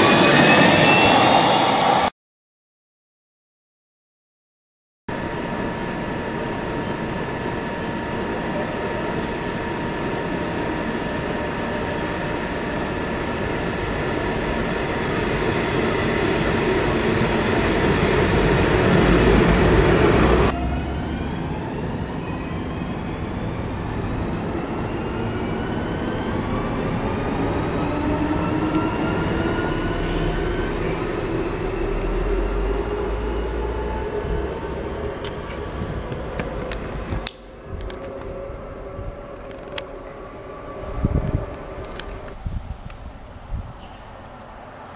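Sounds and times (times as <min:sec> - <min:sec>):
electric train running past: 0:00.0 - 0:02.1, 0:05.1 - 0:44.9
traction motors whining: 0:05.1 - 0:20.5.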